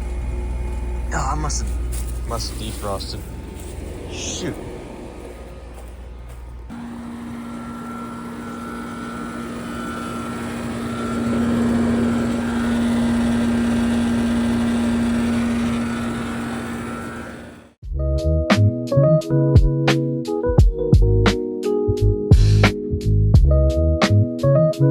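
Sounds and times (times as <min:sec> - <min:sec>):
compressor hum: 0:00.0 - 0:17.8
condenser fan rushing: 0:00.0 - 0:17.8.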